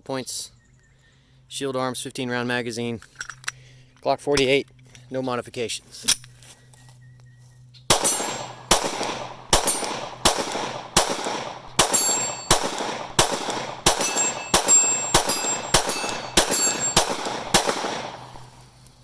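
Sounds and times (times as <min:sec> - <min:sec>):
metallic ring of target hits: 0:07.9 - 0:08.8, 0:09.5 - 0:10.5, 0:11.8 - 0:17.7
pistol shots: 0:07.9 - 0:18.6.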